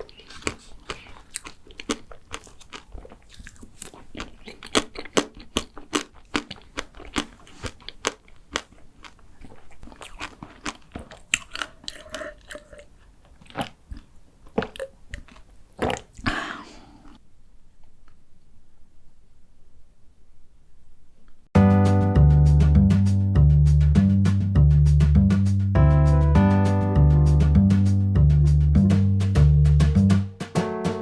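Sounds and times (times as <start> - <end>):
chewing crunchy macaron: 0.0 - 17.2
wet mouth sounds: 0.0 - 17.2.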